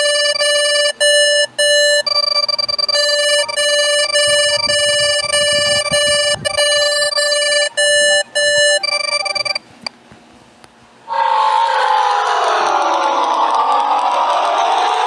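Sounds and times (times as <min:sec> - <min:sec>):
electronic emergency alert tones: 0:00.0 - 0:09.6.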